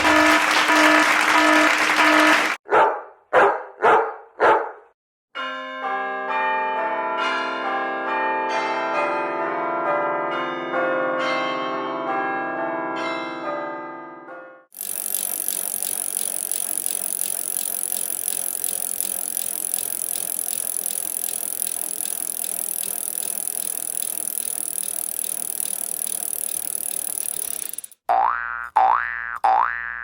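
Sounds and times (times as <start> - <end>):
rapid mechanical rattling clatter: 0.0 - 2.6, 14.8 - 28.0.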